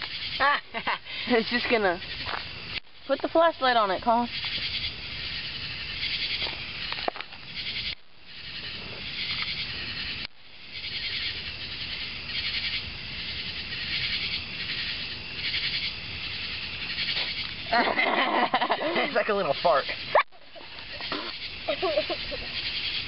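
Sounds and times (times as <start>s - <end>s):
crickets chirping: 0.0s - 23.0s
low rumble of wind: 0.0s - 23.0s.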